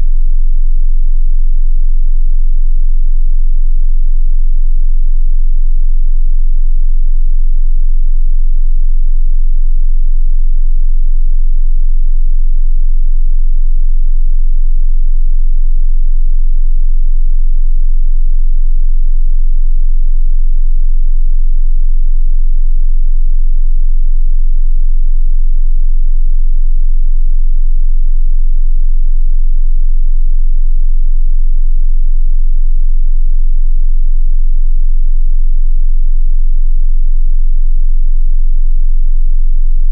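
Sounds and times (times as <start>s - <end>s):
deep bass sine tone: 0.0s - 39.9s.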